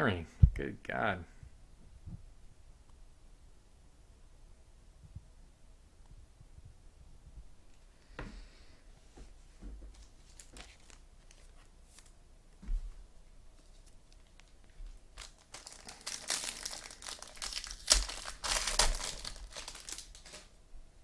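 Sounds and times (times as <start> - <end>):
wrapper tearing and crinkling: 10.0 - 12.1, 13.7 - 20.6.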